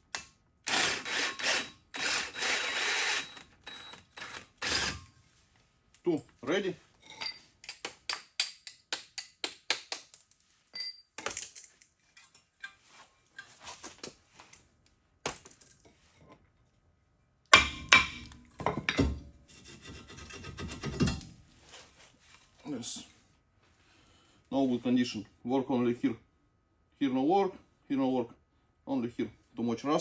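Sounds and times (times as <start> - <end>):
metal tools clinking: 7.0 - 7.8, 10.7 - 12.8
metal clattering and scraping: 17.8 - 22.6.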